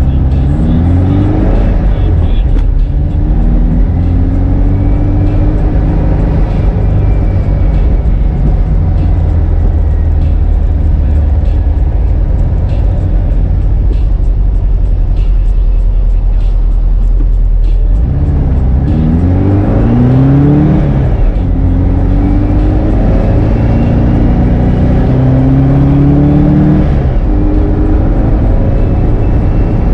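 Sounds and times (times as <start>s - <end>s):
car engine accelerating: 0.0s - 29.9s.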